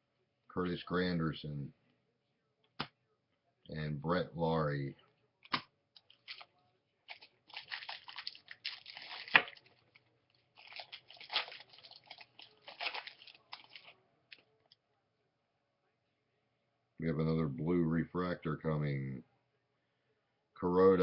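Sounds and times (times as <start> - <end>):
foil wrapper crinkling: 6.1 - 6.5, 7.1 - 14.0.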